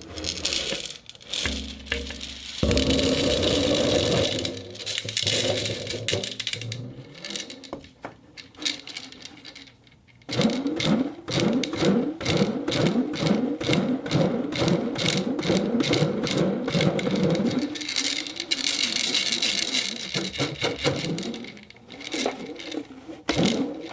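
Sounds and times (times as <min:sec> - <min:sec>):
fast whirring rolling: 0:00.0 - 0:07.8, 0:12.7 - 0:23.9
ceramic balls rolling and clicking: 0:00.0 - 0:23.9.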